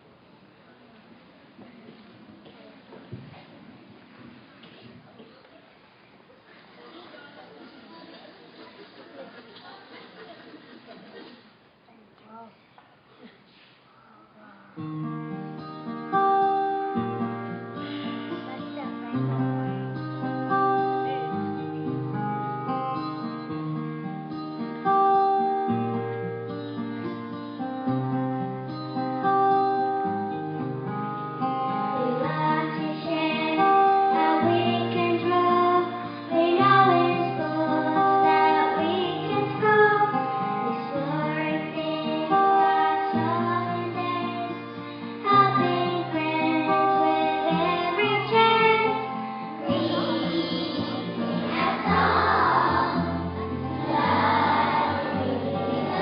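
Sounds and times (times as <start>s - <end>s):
strummed acoustic guitar: 14.8s - 56.0s
children singing with instruments: 31.9s - 44.6s, 45.2s - 56.0s.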